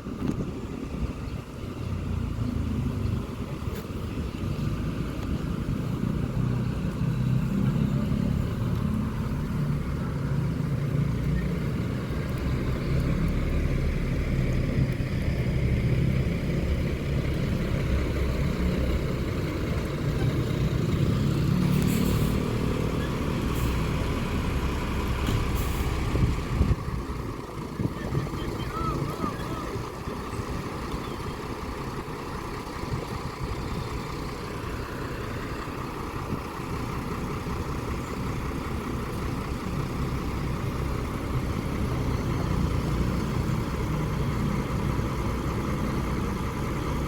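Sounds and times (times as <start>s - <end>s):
diesel bus engine rumbling: 0.0s - 47.0s
short air hisses: 21.8s - 22.5s, 25.4s - 26.0s.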